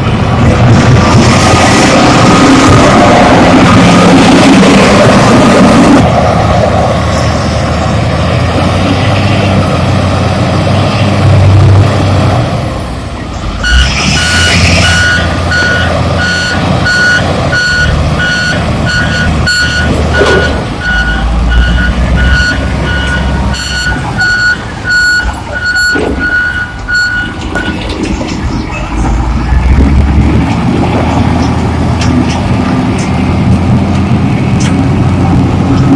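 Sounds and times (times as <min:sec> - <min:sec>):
diesel engine running: 0:00.0 - 0:35.9
reversing alarm beeping: 0:13.6 - 0:27.8.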